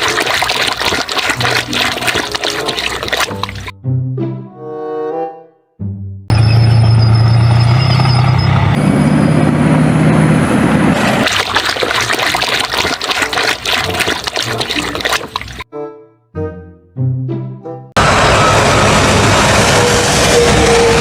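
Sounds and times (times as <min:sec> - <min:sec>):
water running and splashing: 0:00.0 - 0:03.7, 0:11.2 - 0:15.6.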